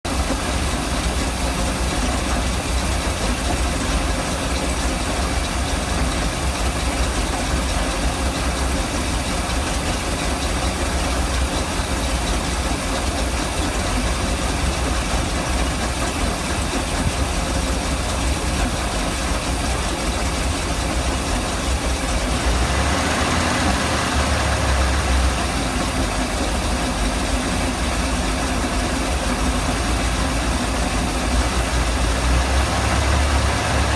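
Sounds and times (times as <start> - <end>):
boat engine idling roughly: 0.0 - 33.9.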